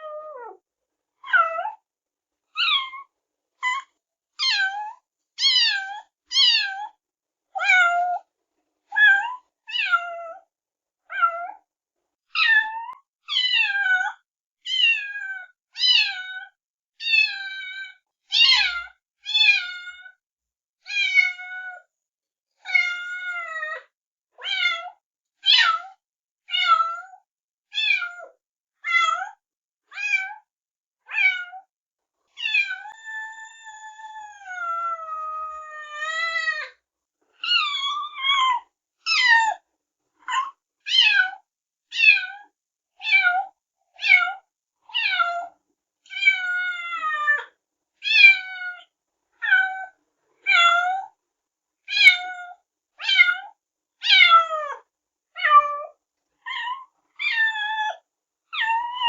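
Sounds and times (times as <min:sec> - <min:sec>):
kittens meowing: 0:32.4 - 0:36.7.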